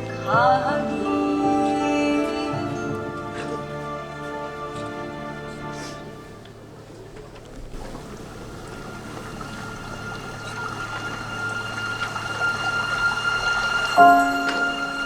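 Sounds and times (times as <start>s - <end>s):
person singing: 0.0s - 5.0s
rushing water-like noise: 0.0s - 15.0s.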